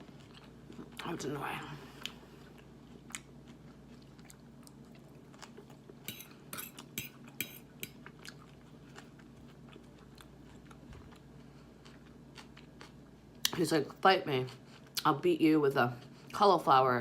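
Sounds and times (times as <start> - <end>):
chewing: 1.9 - 13.0
fork scraping on plate: 6.1 - 7.9.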